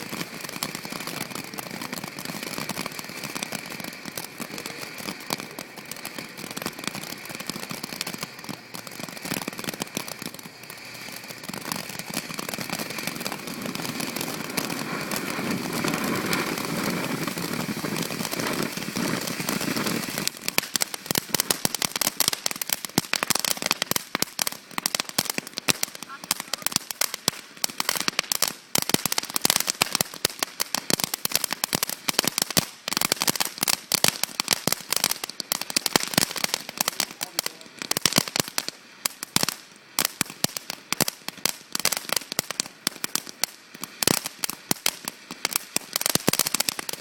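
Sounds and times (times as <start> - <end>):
firecrackers popping: 0.0 - 47.0
fireworks hissing and crackling: 0.0 - 47.0.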